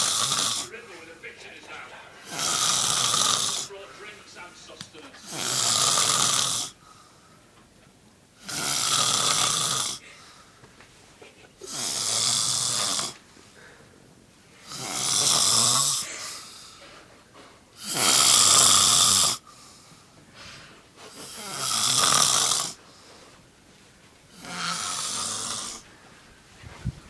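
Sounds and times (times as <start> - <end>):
person snoring loudly: 0.0 - 0.7, 2.2 - 3.7, 5.2 - 6.8, 8.4 - 10.0, 11.6 - 13.2, 14.6 - 16.5, 17.8 - 19.4, 21.2 - 22.8, 24.3 - 25.8
quiet breathing: 0.0 - 7.6, 9.7 - 11.9, 12.5 - 17.8, 19.3 - 21.6, 22.7 - 27.0.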